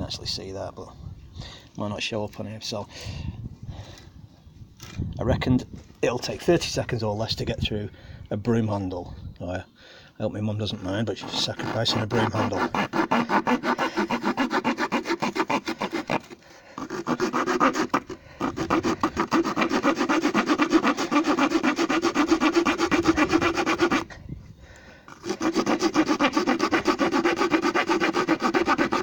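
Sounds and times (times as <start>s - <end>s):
small saw cutting wood: 11.2s - 24.2s, 25.1s - 29.0s.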